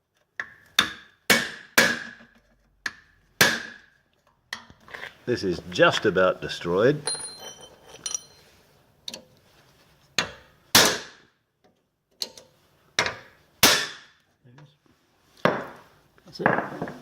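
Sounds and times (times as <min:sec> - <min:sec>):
steel plate ringing: 0:07.1 - 0:08.5.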